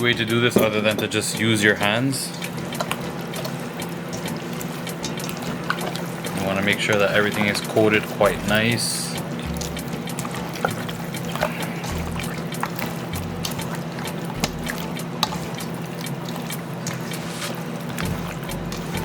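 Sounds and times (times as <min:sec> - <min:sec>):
background music: 0:00.0 - 0:19.0
hands squelching meat in marinade: 0:01.6 - 0:19.0
small clicks and slaps: 0:12.2 - 0:17.3.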